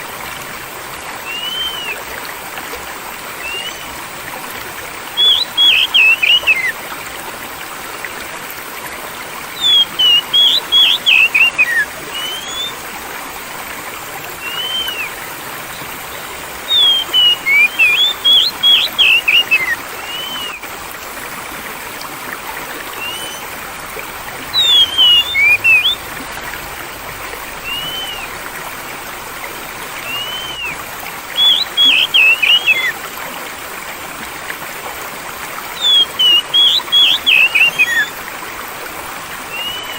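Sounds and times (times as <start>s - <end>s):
flowing water: 0.0s - 39.9s
soft whistled notes: 1.2s - 2.0s, 3.4s - 6.7s, 9.6s - 12.8s, 14.4s - 20.6s, 22.9s - 23.6s, 24.5s - 26.0s, 27.6s - 28.3s, 30.0s - 30.8s, 31.4s - 32.9s, 35.8s - 38.1s, 39.5s - 39.9s
songbird high chirping: 1.2s - 2.0s, 3.4s - 6.7s, 9.5s - 12.8s, 14.4s - 21.4s, 22.2s - 23.6s, 24.3s - 26.1s, 27.6s - 28.3s, 30.0s - 30.8s, 31.4s - 32.9s, 35.8s - 38.1s, 39.5s - 39.9s.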